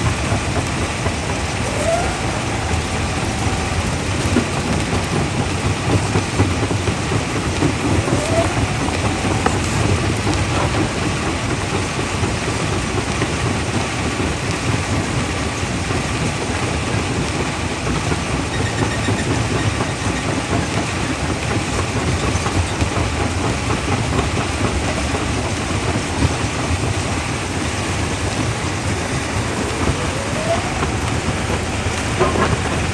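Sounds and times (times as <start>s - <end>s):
machinery rumble: 0.0s - 32.9s.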